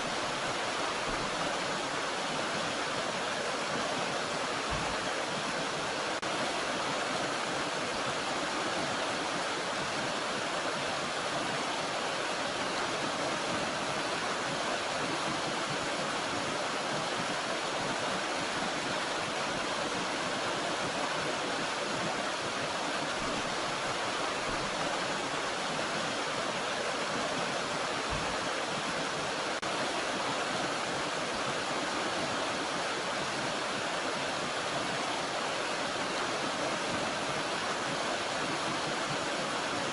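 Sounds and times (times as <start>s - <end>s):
mountain stream rushing: 0.0s - 39.9s.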